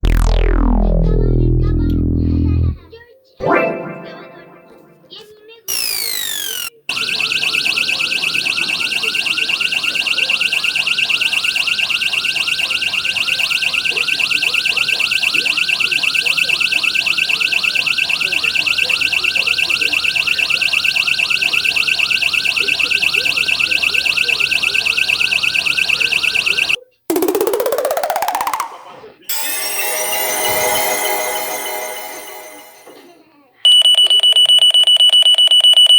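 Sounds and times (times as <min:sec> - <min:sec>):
electronic buzzing alarm tone: 0:00.0 - 0:02.8, 0:05.7 - 0:28.6.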